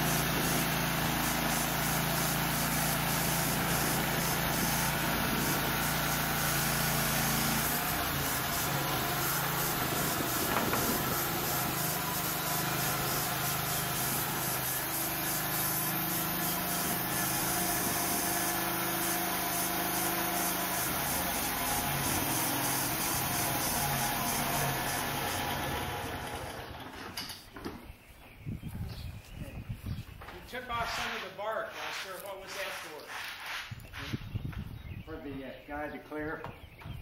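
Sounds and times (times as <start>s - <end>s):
sawmill engine running: 0.0s - 27.0s.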